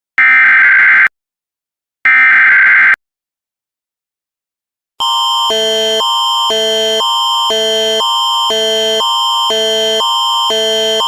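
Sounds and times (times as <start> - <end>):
electronic alert chord alternating tones: 5.0 - 11.0
steady high tone: 5.0 - 11.0.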